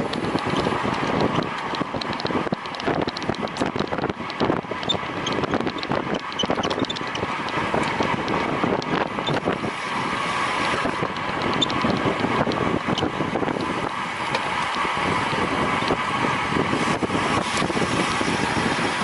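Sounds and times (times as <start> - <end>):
small clicks and rattles: 0.0 - 15.1
bike rushing noise: 0.0 - 19.0
wind buffeting microphone: 0.0 - 19.0.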